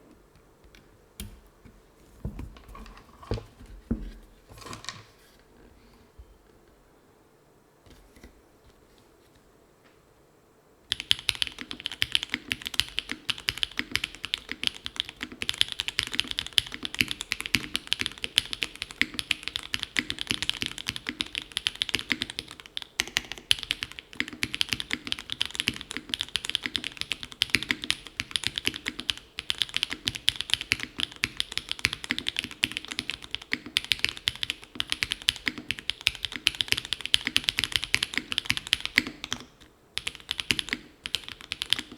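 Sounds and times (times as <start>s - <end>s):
fast typing on mechanical keyboard: 10.9s - 41.9s.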